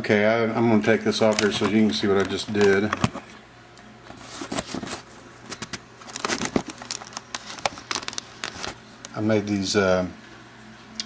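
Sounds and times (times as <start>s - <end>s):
handling clicks taps and rustles: 1.2s - 3.2s.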